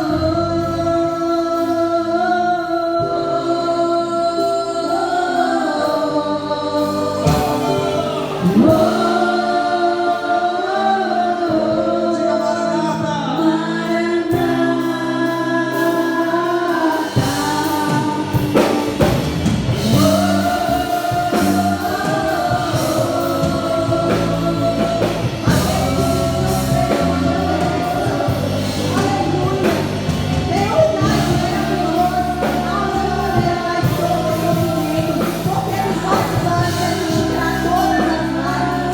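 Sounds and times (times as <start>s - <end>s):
bass: 0.0s - 38.9s
drums: 0.0s - 38.9s
keyboard: 0.0s - 38.9s
singers holding long notes: 0.0s - 38.9s.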